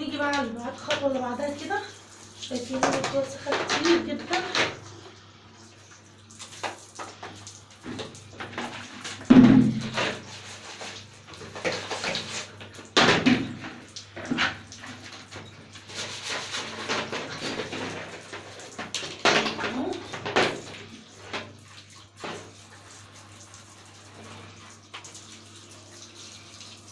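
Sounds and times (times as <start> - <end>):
plastic parts knocking and clattering: 16.7 - 20.7.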